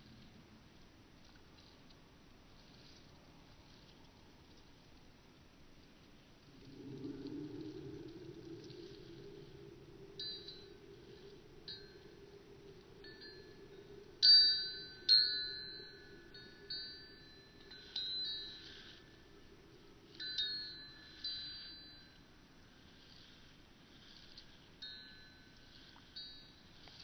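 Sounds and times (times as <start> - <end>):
wind chimes ringing: 10.2 - 22.3, 24.8 - 26.8.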